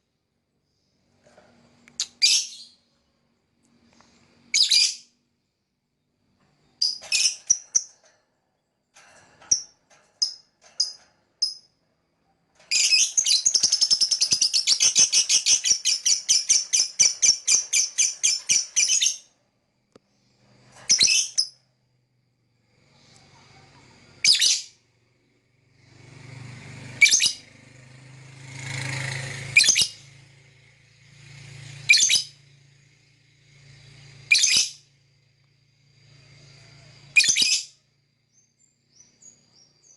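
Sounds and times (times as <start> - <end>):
lovebird chirping: 2.0 - 2.9, 4.5 - 5.1, 6.6 - 7.9, 12.7 - 19.3, 20.9 - 21.6, 23.0 - 24.8, 27.0 - 27.4, 29.5 - 30.1, 31.8 - 32.4, 34.2 - 34.9, 36.3 - 39.9.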